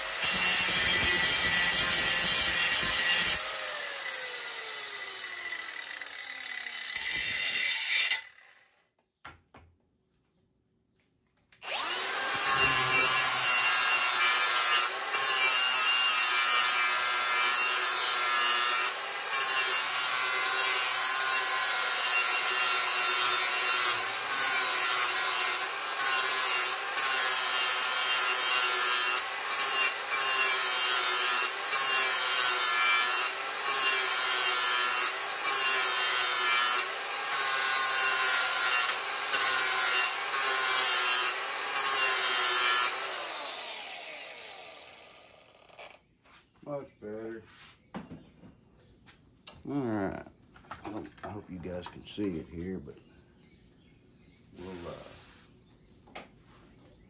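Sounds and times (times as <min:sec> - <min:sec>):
electric grinder sharpening metal: 0:00.0 - 0:08.6, 0:11.6 - 0:46.0
grinder motor whine winding down: 0:11.6 - 0:14.0, 0:42.9 - 0:46.0.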